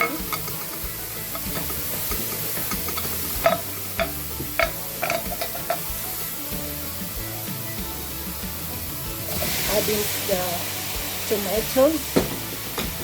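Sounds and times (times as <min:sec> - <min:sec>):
spoon knocking against pan: 0:00.0 - 0:05.9
garlic sizzling in a pan: 0:00.0 - 0:13.0.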